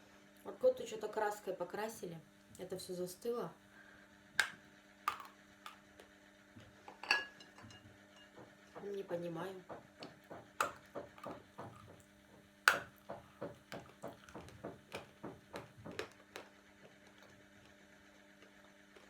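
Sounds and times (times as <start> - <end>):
crunchy chewing: 13.6 - 19.0.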